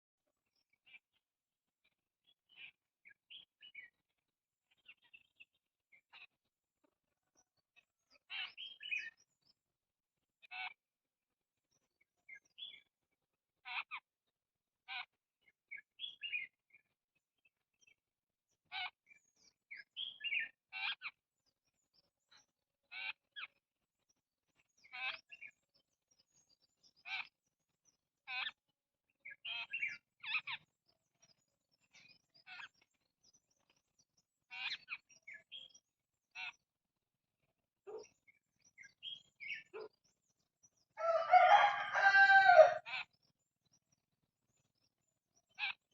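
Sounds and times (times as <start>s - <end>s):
small birds chirping: 0.2s - 45.9s
rooster crowing: 41.0s - 42.9s.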